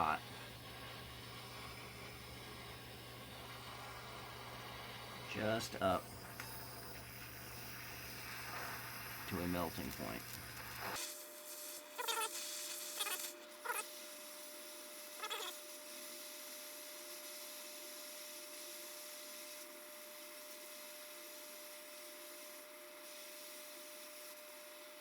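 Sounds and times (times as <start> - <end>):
gas torch hissing: 0.0 - 13.3.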